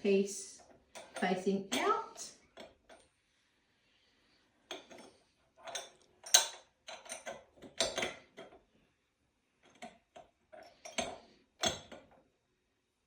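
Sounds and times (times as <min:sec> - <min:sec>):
metal parts clinking and scraping: 0:04.7 - 0:08.6.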